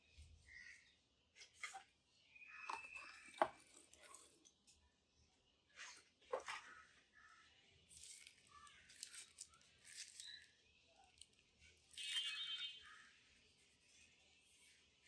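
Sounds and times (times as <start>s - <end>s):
packaging rustling and scraping: 7.9s - 10.5s.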